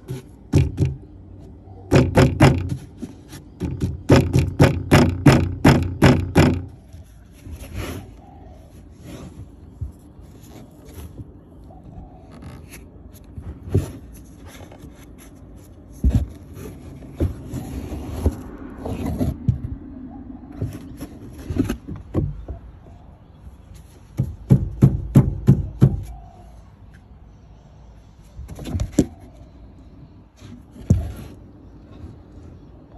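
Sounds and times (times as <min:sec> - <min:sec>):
plastic pipe knocking on metal: 0:00.5 - 0:01.1, 0:01.9 - 0:02.8, 0:03.6 - 0:06.7.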